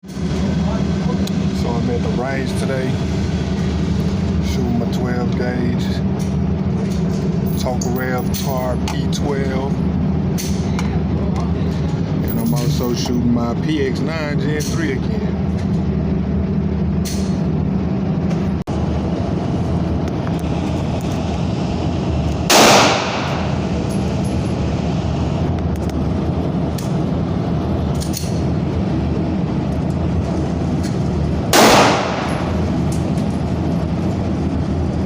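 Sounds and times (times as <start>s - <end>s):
low rumble: 0.0s - 35.0s
faint gunshot cracks: 22.5s - 23.4s
loud gunshots: 22.5s - 23.6s, 31.5s - 32.6s.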